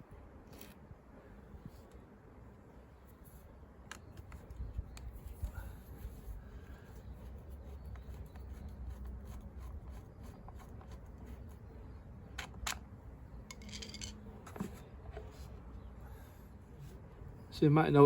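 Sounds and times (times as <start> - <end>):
small metal tools clicking: 13.5 - 14.2.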